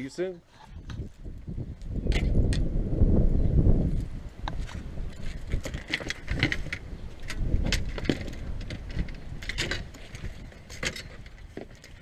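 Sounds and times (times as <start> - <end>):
objects clicking and rattling: 4.5 - 12.0.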